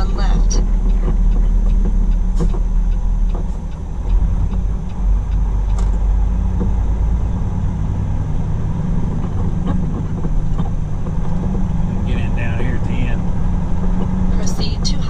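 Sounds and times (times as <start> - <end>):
faint knocks and clicks: 0.0 - 11.9
diesel truck engine rumble: 0.0 - 15.0.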